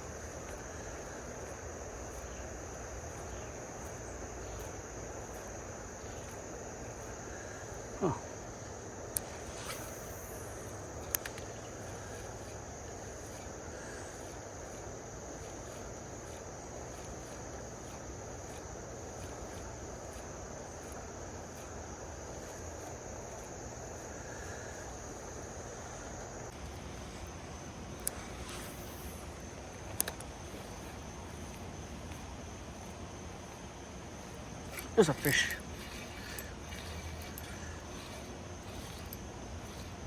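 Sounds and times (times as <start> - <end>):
high-pitched insect chorus: 0.0 - 40.0
sharp click: 11.0 - 11.5
flowing creek water: 30.5 - 40.0.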